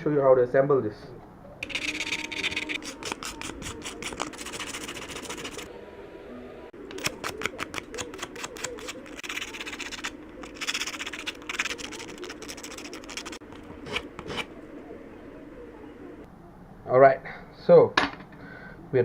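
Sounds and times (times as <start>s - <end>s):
sandpaper rasping on metal: 1.6s - 5.7s, 7.0s - 14.5s.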